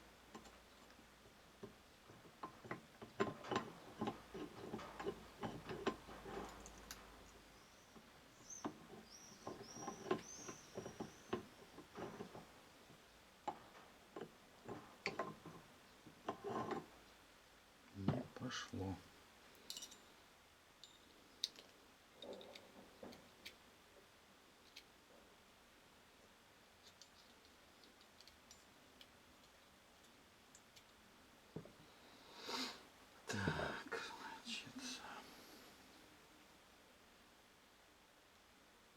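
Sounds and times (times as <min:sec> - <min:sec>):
faint metallic clicks and scrapes: 0:00.2 - 0:17.2, 0:19.5 - 0:20.2, 0:20.8 - 0:23.7, 0:24.5 - 0:25.2, 0:26.7 - 0:31.0.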